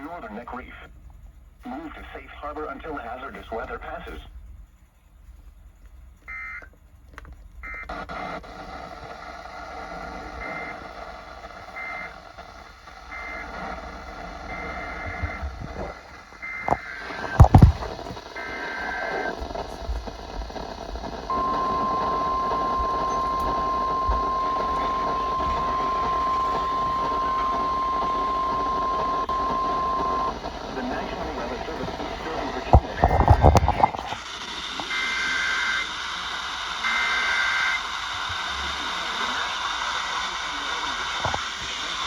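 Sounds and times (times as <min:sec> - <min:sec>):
high-pitched data bursts: 0:09.5 - 0:42.0
steady alarm tone: 0:13.1 - 0:34.1
loud thumps: 0:16.6 - 0:18.2.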